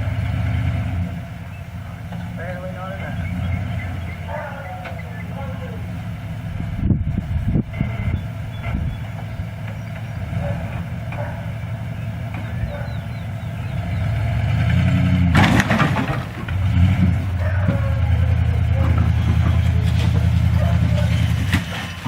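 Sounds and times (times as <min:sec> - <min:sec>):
engine running: 0:00.0 - 0:22.0
loud crash: 0:15.2 - 0:16.5.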